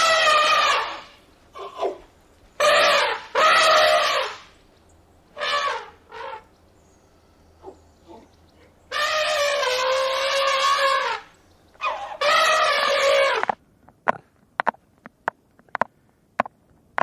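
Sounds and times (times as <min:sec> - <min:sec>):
animal calling loudly: 0:00.0 - 0:04.5, 0:05.4 - 0:06.5, 0:08.9 - 0:13.6.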